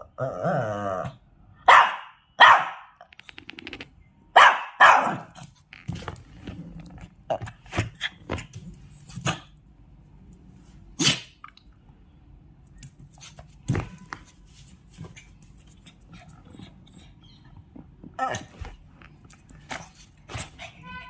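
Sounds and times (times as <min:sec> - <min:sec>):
dog barking: 0:01.6 - 0:03.0, 0:04.4 - 0:05.4.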